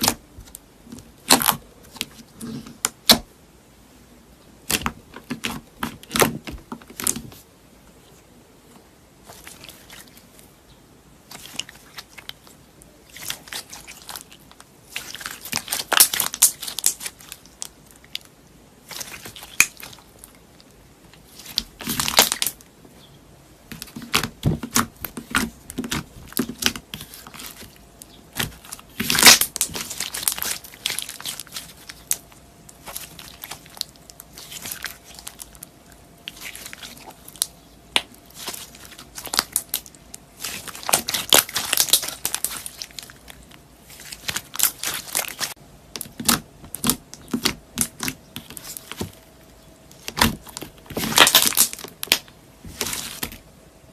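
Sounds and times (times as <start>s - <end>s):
slime crackling when squeezed: 13.1s - 20.1s, 23.8s - 35.7s, 36.3s - 49.0s, 50.0s - 53.3s.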